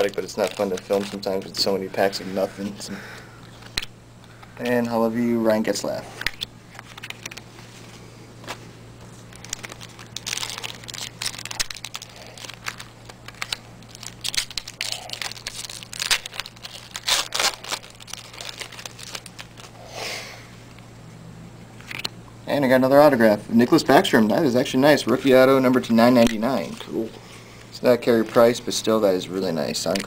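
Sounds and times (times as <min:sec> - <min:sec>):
card pack wrappers crinkling: 0:00.0 - 0:05.0, 0:05.8 - 0:07.6, 0:08.4 - 0:19.8, 0:23.7 - 0:27.1, 0:27.9 - 0:30.0
faint steady hum: 0:00.0 - 0:30.0.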